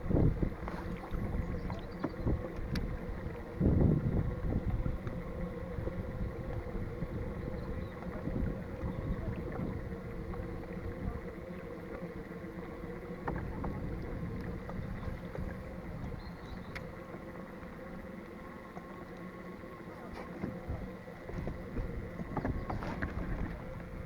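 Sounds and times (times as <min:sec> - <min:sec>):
wind buffeting microphone: 0:00.0 - 0:11.6, 0:13.2 - 0:17.0, 0:20.4 - 0:24.0
faint steady hum: 0:00.0 - 0:24.0.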